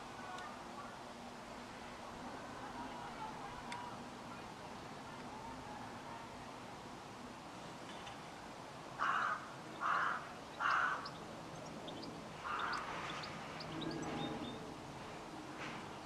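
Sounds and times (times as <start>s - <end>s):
crow cawing: 9.0s - 11.1s, 12.4s - 12.9s.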